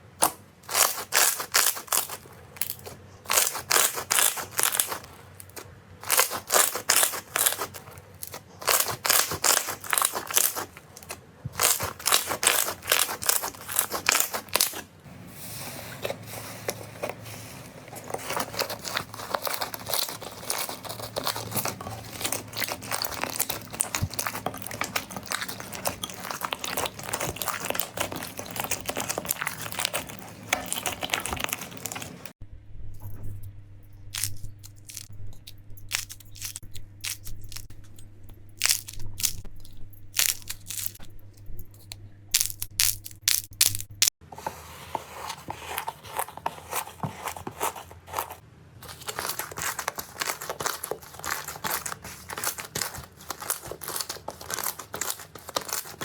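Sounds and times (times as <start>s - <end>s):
crunchy slime crackling: 0.0s - 32.4s, 34.1s - 35.1s, 35.9s - 37.7s, 38.6s - 41.1s, 45.3s - 56.0s.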